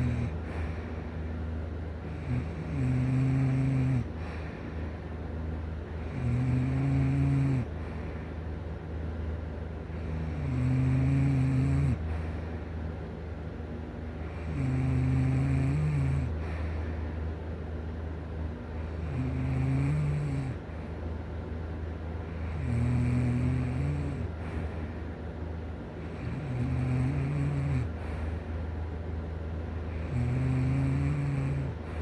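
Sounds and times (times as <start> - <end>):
person snoring: 0.0 - 0.8, 2.1 - 4.4, 6.0 - 7.8, 10.0 - 12.1, 14.3 - 16.6, 18.9 - 20.6, 22.4 - 24.6, 26.1 - 28.0, 29.9 - 32.0
quiet breathing: 0.0 - 17.8, 18.4 - 21.1, 22.0 - 32.0.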